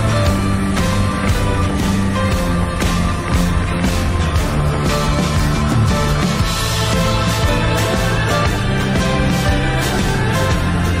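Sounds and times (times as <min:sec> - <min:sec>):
background music with beat: 0:00.0 - 0:11.0.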